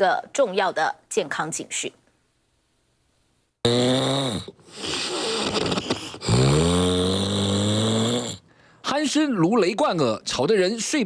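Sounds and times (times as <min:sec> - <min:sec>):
heavy snoring: 0:03.6 - 0:08.5.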